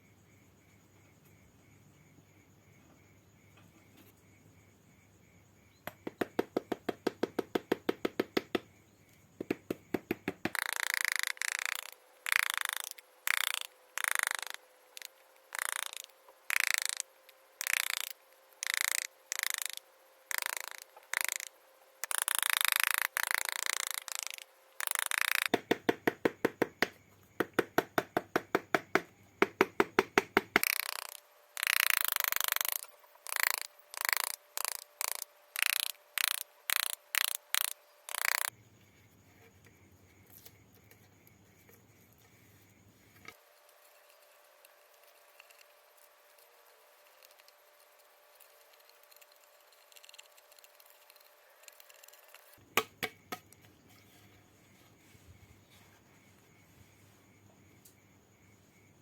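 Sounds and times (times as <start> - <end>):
sharp quick regular taps: 5.8 - 8.7, 9.4 - 17.0, 17.6 - 32.8.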